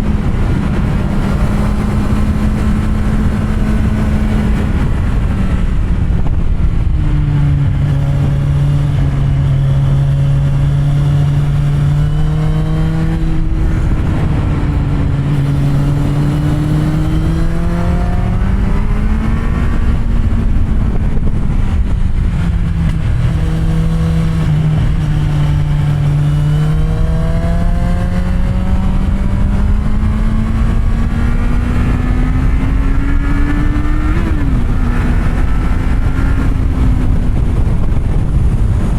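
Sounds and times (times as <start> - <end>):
low wind rumble: 0.0 - 38.9
motorcycle engine revving: 0.0 - 38.9.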